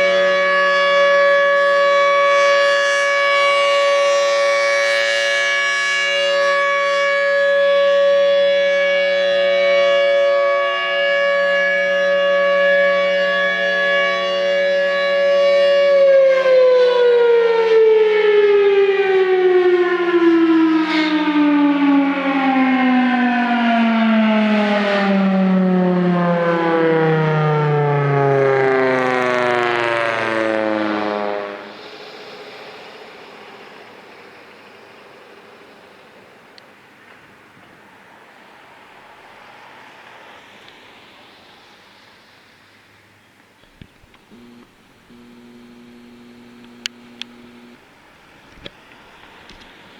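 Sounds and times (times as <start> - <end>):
warning siren winding down: 0.0 - 31.8, 44.3 - 48.6.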